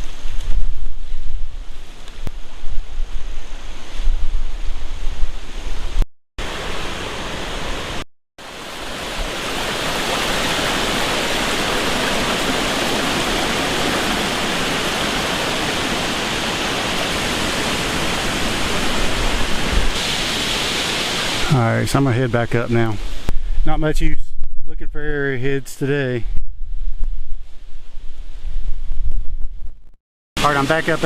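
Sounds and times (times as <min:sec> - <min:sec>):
creek rushing: 0:05.4 - 0:23.3
wind buffeting microphone: 0:10.5 - 0:20.0.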